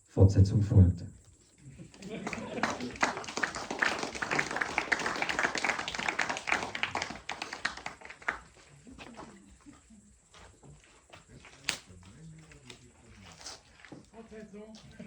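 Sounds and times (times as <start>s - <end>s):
audience applauding: 1.9s - 9.4s.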